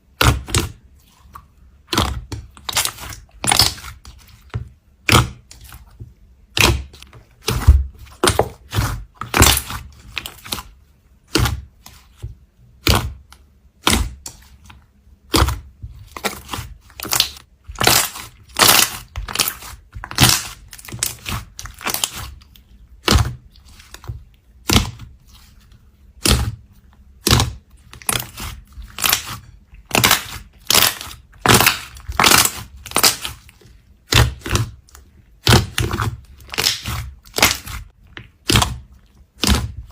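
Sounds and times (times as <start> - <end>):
slime popping and crackling: 1.9 - 4.1, 15.2 - 25.1, 26.2 - 39.9.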